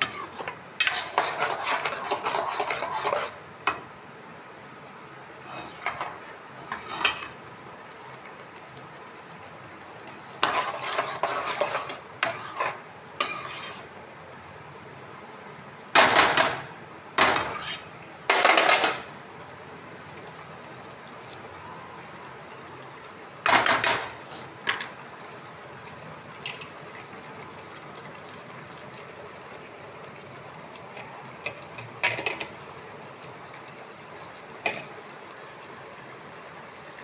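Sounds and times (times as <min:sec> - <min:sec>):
metal spoon scraping cooking pan: 0:00.0 - 0:03.4, 0:05.5 - 0:07.4, 0:10.4 - 0:13.9, 0:17.2 - 0:19.1.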